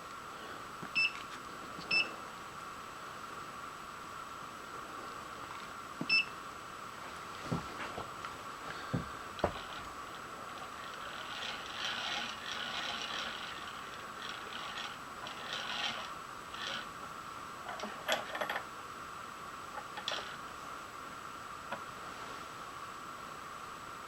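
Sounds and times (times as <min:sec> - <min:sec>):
leadscrew and gears whirring: 0:10.5 - 0:16.9.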